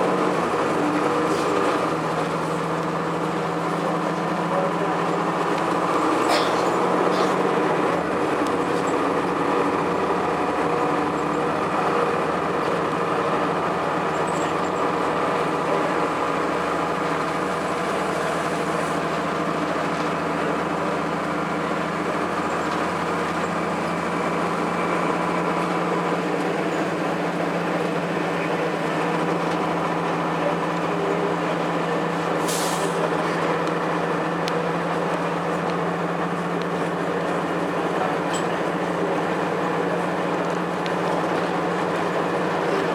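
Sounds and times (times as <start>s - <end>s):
bus diesel engine drone: 0.0s - 42.9s.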